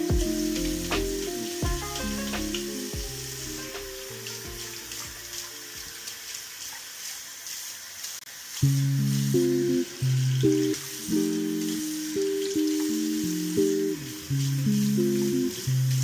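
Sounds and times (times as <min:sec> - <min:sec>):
background music: 0:00.0 - 0:06.2.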